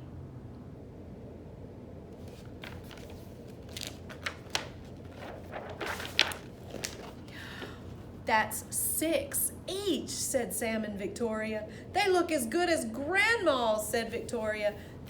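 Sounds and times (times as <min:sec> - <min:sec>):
book pages rustling: 0:02.2 - 0:08.2.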